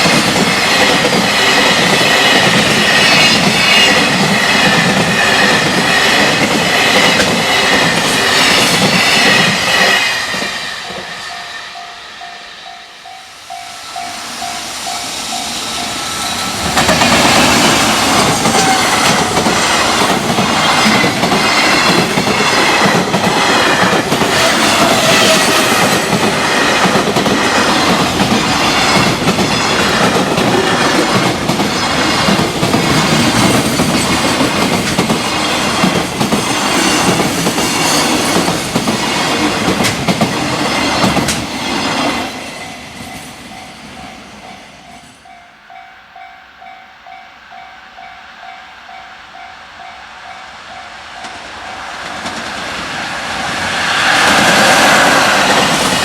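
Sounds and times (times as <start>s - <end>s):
freight train wheels clattering: 0.0s - 11.5s, 13.5s - 43.4s.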